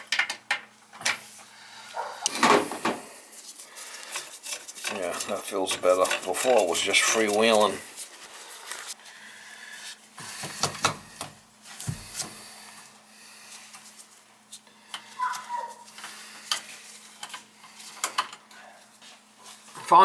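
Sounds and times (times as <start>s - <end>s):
tools and metal parts clicking: 4.2s - 7.7s.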